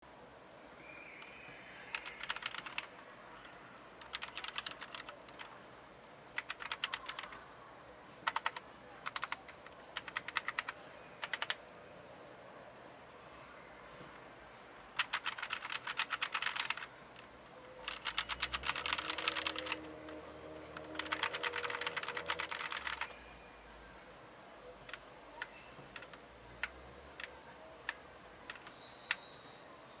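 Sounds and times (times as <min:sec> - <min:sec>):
mechanical keyboard typing: 0:01.9 - 0:03.0, 0:04.0 - 0:05.5, 0:06.3 - 0:07.4, 0:08.2 - 0:11.6, 0:14.8 - 0:23.2, 0:24.9 - 0:29.2.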